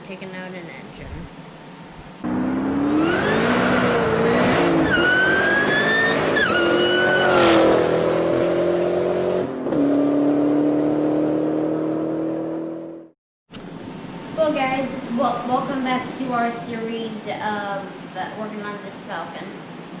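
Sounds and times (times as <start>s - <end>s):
car engine revving hard: 2.2s - 13.1s.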